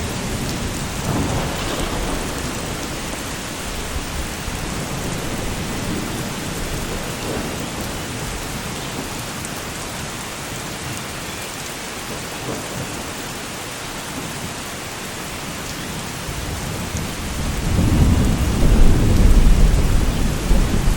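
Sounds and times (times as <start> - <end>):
low thunder rumble: 0.0 - 8.5, 16.3 - 20.9
heavy rain hissing: 0.0 - 20.9.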